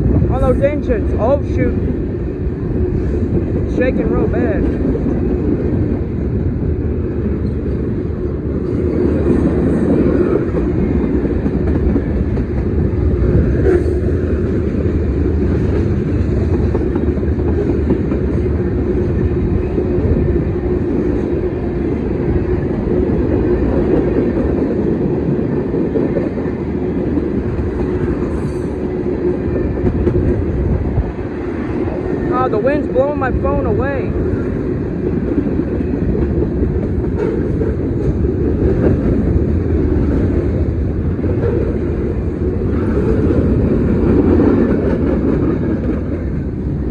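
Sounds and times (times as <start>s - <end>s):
train wheels rumbling on rails: 0.0s - 46.9s.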